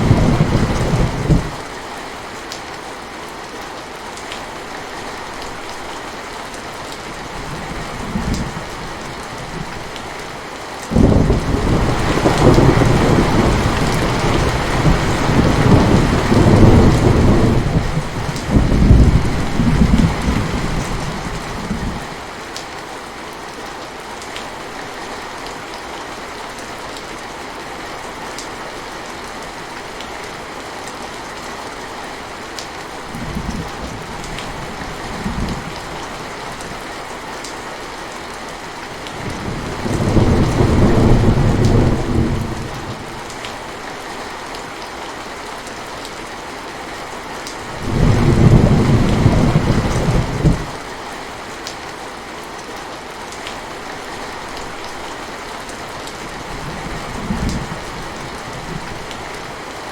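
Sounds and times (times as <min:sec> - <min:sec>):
thunder rumbling: 0:00.0 - 0:01.6, 0:10.9 - 0:22.1, 0:39.2 - 0:43.3, 0:47.7 - 0:50.8
steady rain falling: 0:00.0 - 0:59.9.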